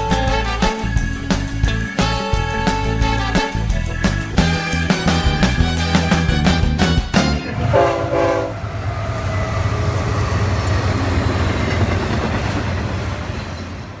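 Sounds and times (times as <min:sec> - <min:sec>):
locomotive air horn blast: 0:00.0 - 0:01.1, 0:02.0 - 0:08.6
train rumbling along: 0:00.0 - 0:14.0.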